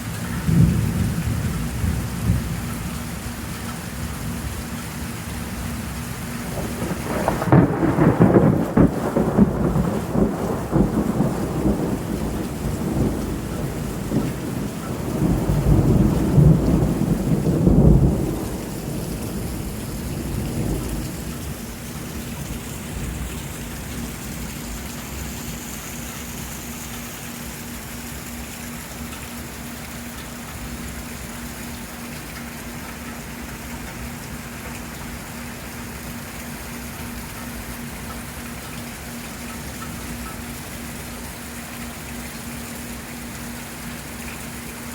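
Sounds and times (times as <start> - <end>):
heavy rain falling: 0.0 - 44.9
thunder rumbling: 0.3 - 3.1, 6.4 - 25.2.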